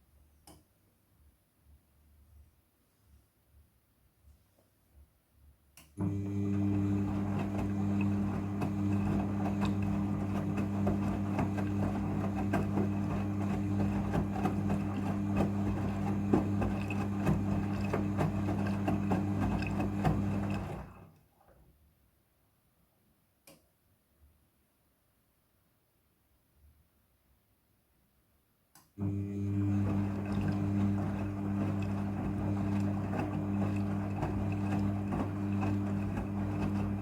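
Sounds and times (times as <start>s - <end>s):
washing machine running: 6.0s - 21.1s, 29.0s - 37.0s.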